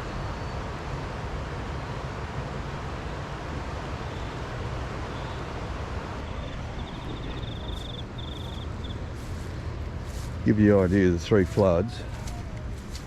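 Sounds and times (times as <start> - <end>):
floodwater rushing: 5.6 - 13.0.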